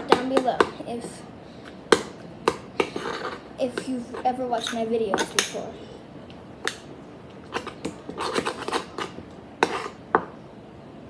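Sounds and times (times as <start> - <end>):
utensil clinking against a bowl: 1.9 - 5.6.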